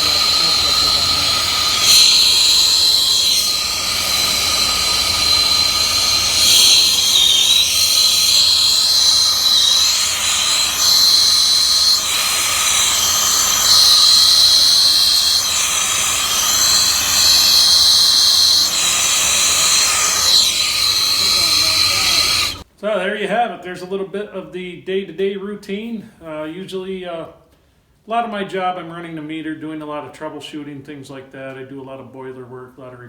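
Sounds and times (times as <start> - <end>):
torch burning with hiss and whistle: 0.0 - 22.7.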